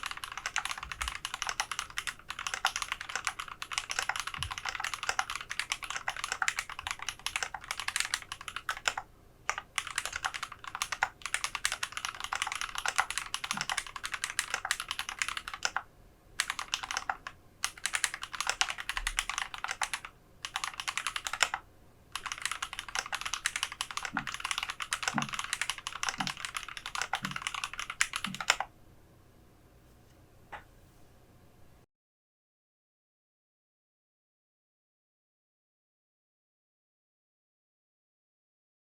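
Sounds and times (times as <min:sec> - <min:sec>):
mechanical keyboard typing: 0:00.0 - 0:21.6, 0:22.2 - 0:28.7.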